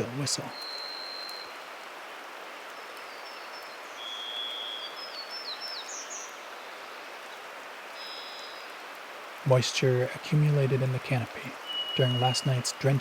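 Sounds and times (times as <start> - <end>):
high thin bird song: 0.0 - 1.6, 2.8 - 6.5, 11.5 - 13.0
rainwater dripping from trees: 0.0 - 13.0
bird long level whistle: 0.6 - 1.5.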